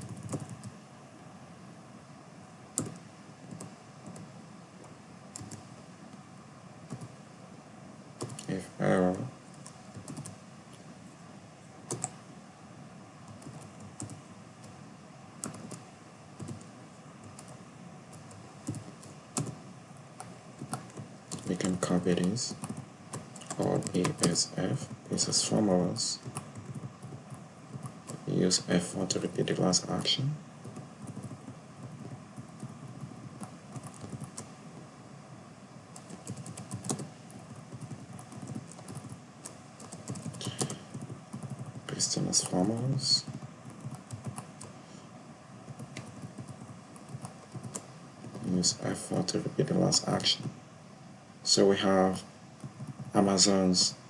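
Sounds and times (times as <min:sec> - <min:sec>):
keyboard keystrokes: 0:00.0 - 0:00.7, 0:02.8 - 0:04.3, 0:08.2 - 0:08.5, 0:30.6 - 0:34.5, 0:36.0 - 0:41.9
faint steady hiss: 0:00.0 - 0:54.0.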